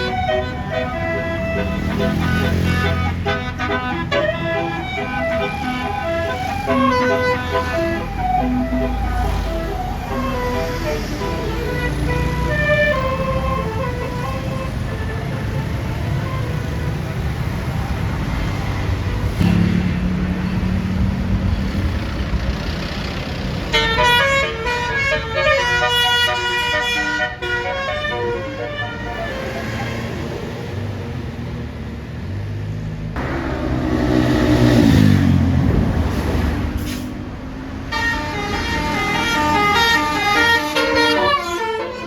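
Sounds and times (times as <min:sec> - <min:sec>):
multi-tone air horn melody: 0:00.0 - 0:17.3, 0:23.7 - 0:30.3, 0:37.9 - 0:42.0
bus engine passing: 0:00.0 - 0:42.0.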